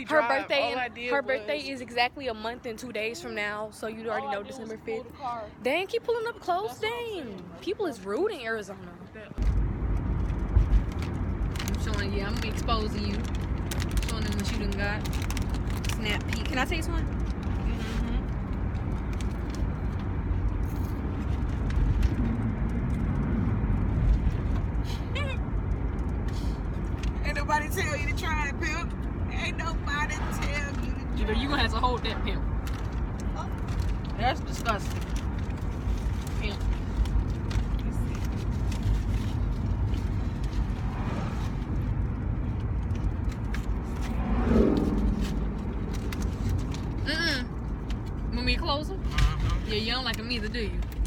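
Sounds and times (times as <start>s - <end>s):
low rumble inside car: 9.2s - 51.0s
faint clicks and rustles: 32.5s - 48.4s.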